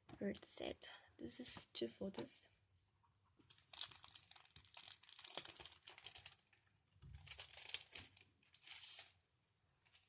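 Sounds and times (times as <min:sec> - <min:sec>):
plastic packaging crackling: 0:03.4 - 0:09.2.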